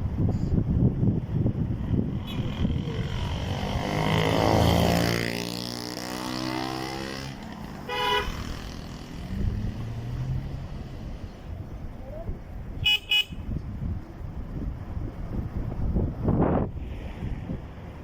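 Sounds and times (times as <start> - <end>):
vehicle engine passing: 1.6 - 11.8
car horn toot: 7.9 - 8.5, 12.8 - 13.5.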